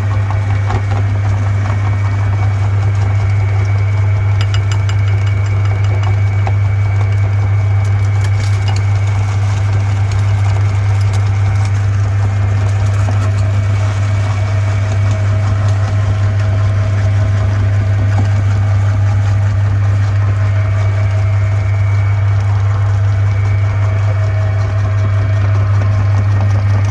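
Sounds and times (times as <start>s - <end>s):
meat grinder motor humming: 0.0s - 26.9s.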